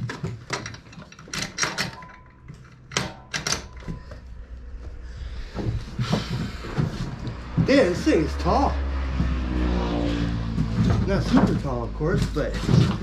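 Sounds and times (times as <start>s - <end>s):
metal parts clicking and knocking: 0.0s - 4.4s.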